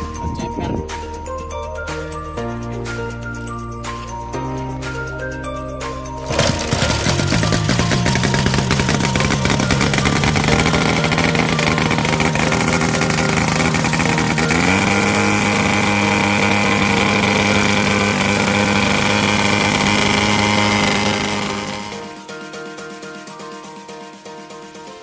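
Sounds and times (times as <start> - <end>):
light aircraft engine running: 6.3 - 22.2.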